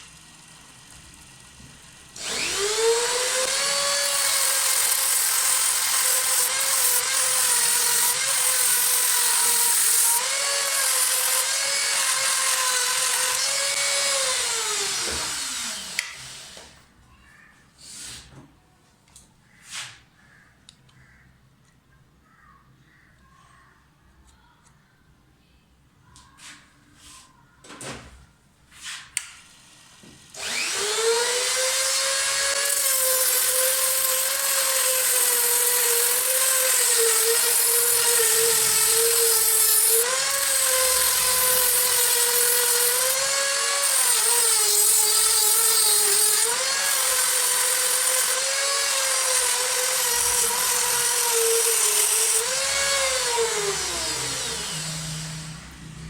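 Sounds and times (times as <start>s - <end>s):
mini grinder whining: 0.1s - 16.8s, 29.7s - 55.8s.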